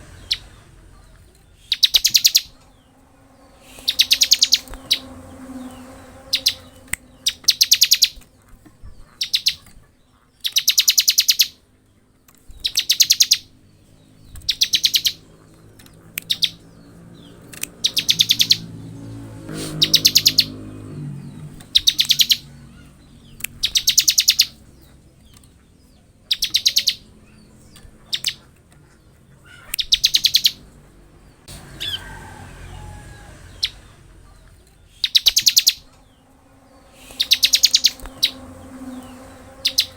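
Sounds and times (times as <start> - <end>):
bird rattling trills: 1.5 - 8.3, 35.0 - 39.9.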